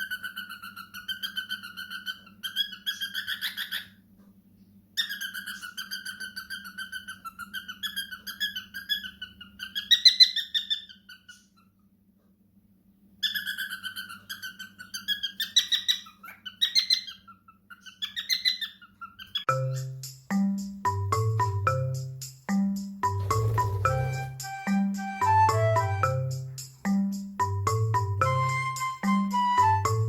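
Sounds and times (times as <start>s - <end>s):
parrot chirping: 0.0s - 4.0s, 5.0s - 11.9s, 13.2s - 20.1s, 23.1s - 26.6s
music with mallet percussion: 19.5s - 30.0s.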